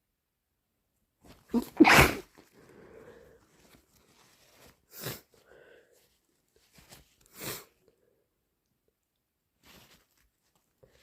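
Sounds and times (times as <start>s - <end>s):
faint breathing: 2.5s - 3.8s, 4.9s - 6.3s
sniffing through stuffy nose: 4.9s - 5.5s, 7.3s - 7.8s.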